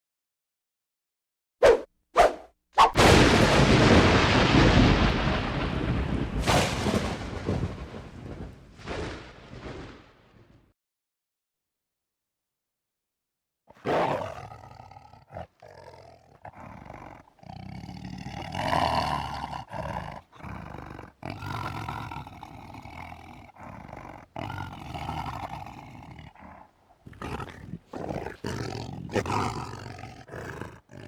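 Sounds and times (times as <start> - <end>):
animal roars: 13.7 - 31.0.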